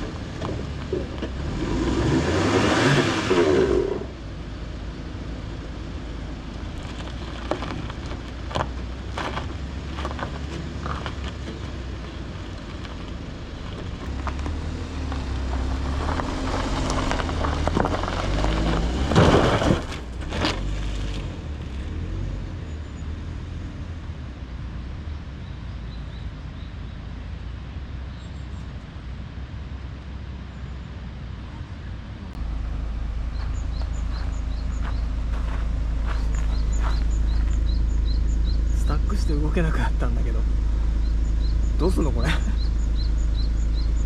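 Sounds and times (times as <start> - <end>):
car engine rumble: 0.0 - 44.0
tires on soft gravel: 0.0 - 44.0
birds chirping: 32.4 - 44.0.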